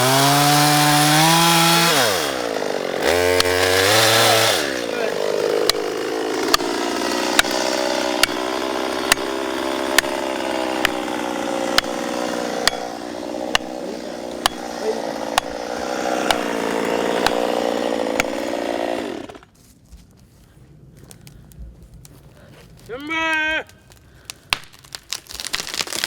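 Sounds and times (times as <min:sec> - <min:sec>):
chainsaw cutting: 0:00.0 - 0:19.6.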